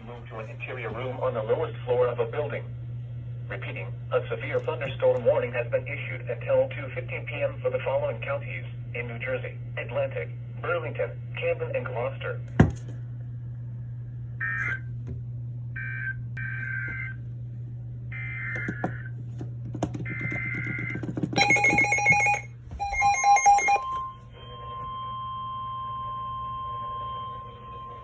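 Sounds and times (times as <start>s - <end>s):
low hum: 12.4s - 28.0s
steady warning alarm tone: 15.8s - 17.2s, 18.1s - 19.2s, 19.9s - 28.0s.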